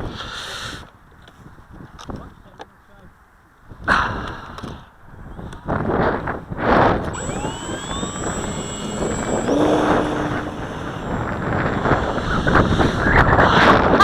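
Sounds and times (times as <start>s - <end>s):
wind noise on microphone: 0.0s - 2.5s, 3.6s - 14.0s
model plane motor whining: 7.0s - 13.5s.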